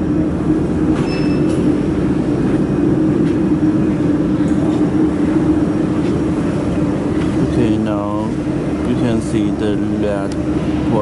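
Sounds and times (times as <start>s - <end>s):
machine humming: 0.0s - 11.0s
short high beep: 1.0s - 1.5s.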